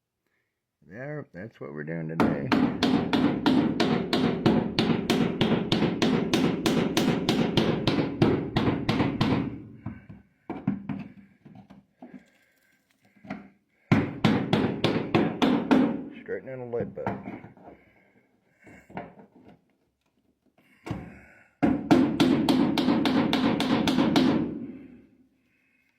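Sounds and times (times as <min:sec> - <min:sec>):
pliers hammering sheet metal: 0:02.2 - 0:10.0, 0:13.9 - 0:16.2, 0:21.6 - 0:24.8.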